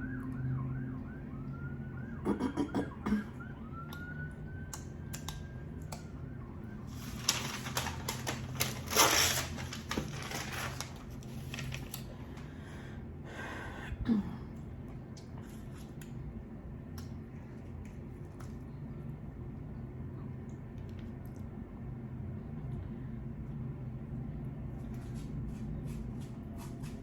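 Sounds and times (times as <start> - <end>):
faint wavering siren-like tone: 0.0 - 2.2, 2.8 - 7.1
eating clicks and crackling: 3.8 - 6.2, 14.6 - 19.2, 20.4 - 21.6.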